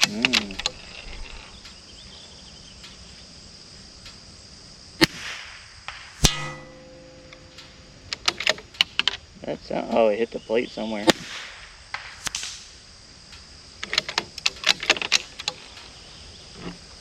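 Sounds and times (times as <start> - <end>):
light clicks: 0.0 - 3.4
rifle shot: 5.0 - 8.1, 11.0 - 12.9
sharp metallic crack: 5.0 - 9.3, 10.9 - 16.0.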